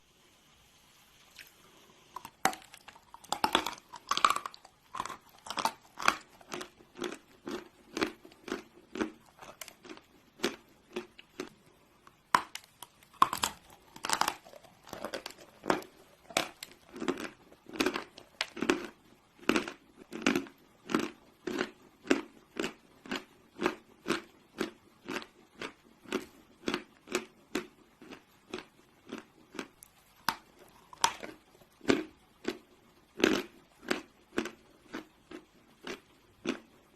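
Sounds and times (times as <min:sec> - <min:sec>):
chewing crunches: 0:02.1 - 0:36.8
crunching bites of chalk: 0:02.2 - 0:18.9.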